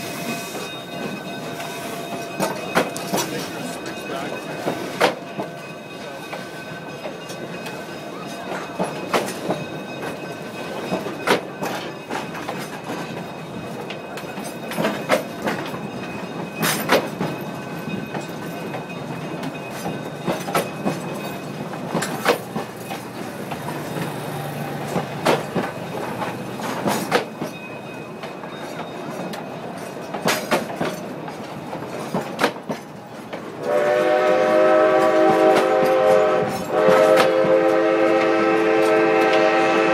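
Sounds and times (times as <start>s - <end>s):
wheels clanking over track: 0.0s - 39.6s
train rumbling on rails: 0.0s - 39.9s
steam locomotive whistle: 33.6s - 39.9s.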